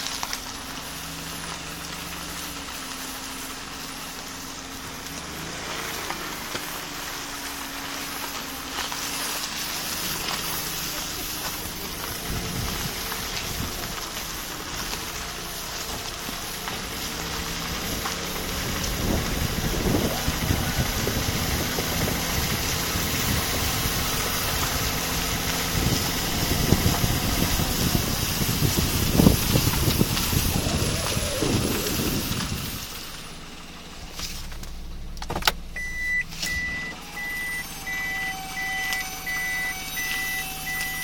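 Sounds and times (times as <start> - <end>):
hiss: 0.0 - 35.2
car engine running: 0.0 - 41.0
irregular crackling: 0.0 - 41.0.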